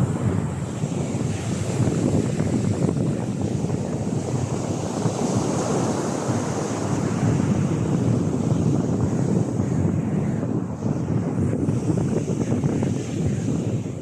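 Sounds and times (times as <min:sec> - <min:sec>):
surf breaking on beach: 0:00.0 - 0:14.0
wind buffeting microphone: 0:00.0 - 0:14.0.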